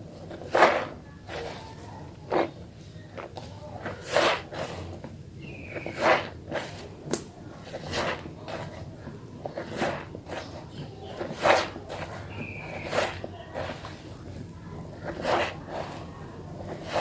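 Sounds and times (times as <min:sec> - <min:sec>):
wet soap bar lathering: 0:03.2 - 0:14.2.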